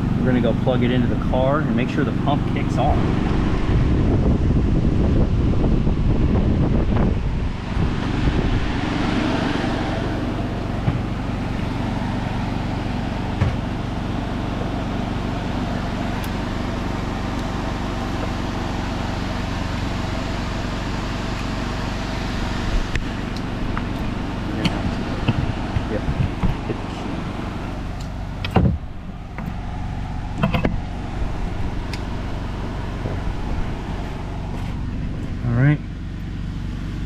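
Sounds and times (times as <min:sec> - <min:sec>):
low mechanical hum: 0:00.0 - 0:37.0.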